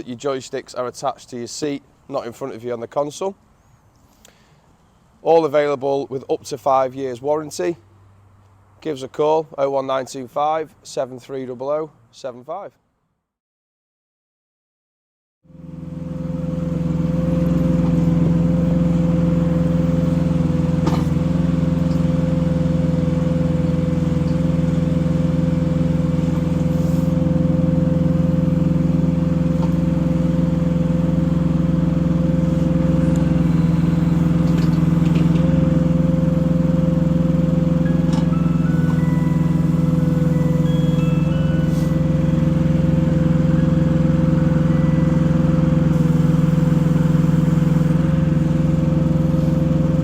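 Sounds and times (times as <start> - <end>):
diesel engine running: 15.5 - 50.0.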